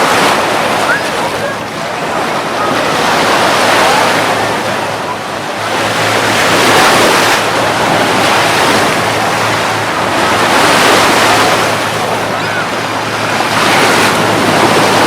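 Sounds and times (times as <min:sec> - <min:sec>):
ocean waves breaking on beach: 0:00.0 - 0:15.0.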